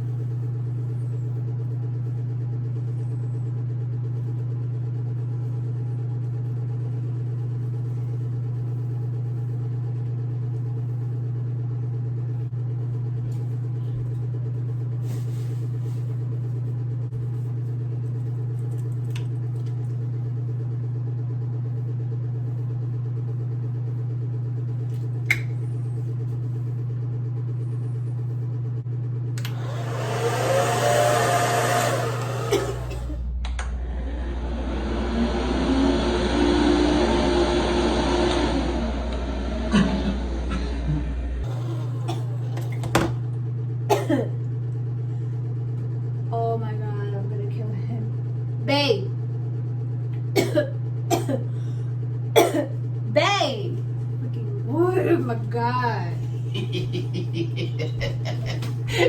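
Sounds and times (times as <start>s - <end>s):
hair dryer motor humming: 29.3s - 43.4s, 56.2s - 59.0s.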